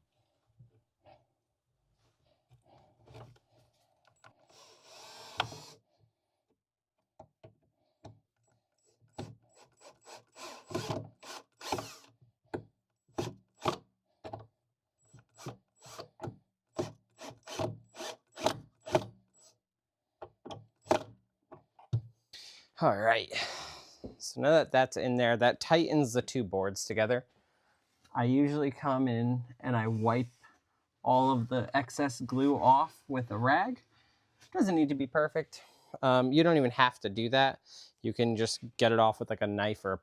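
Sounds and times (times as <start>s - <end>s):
drill running: 4.5s - 5.8s, 9.6s - 12.1s, 15.8s - 16.0s, 17.2s - 19.0s.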